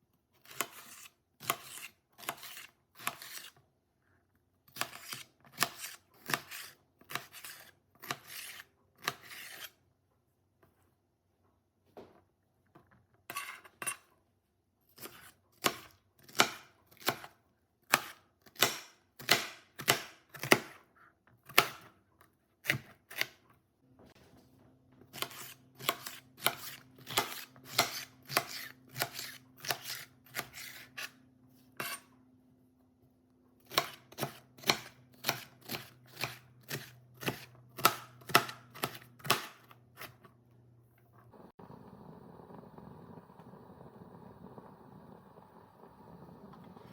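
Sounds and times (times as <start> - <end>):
knife chopping on cutting board: 0.4 - 3.5, 4.7 - 9.7, 17.9 - 20.8, 21.5 - 21.9, 25.1 - 31.2, 33.6 - 40.2.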